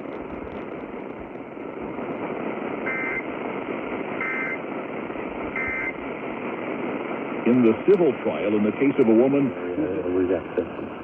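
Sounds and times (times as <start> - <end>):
radio reception hiss: 0.0 - 11.0
buzzy two-tone digital chirps: 2.9 - 3.2, 4.2 - 4.6, 5.6 - 6.0.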